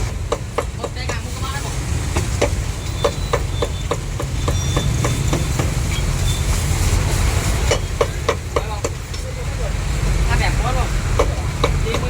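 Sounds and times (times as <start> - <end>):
cleaver chopping meat on block: 0.0 - 1.2, 11.1 - 12.0.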